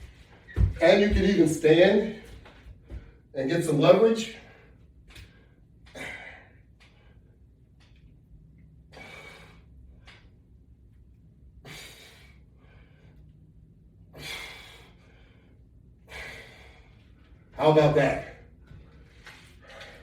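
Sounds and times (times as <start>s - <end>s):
man exhaling forcefully: 6.0s - 6.5s.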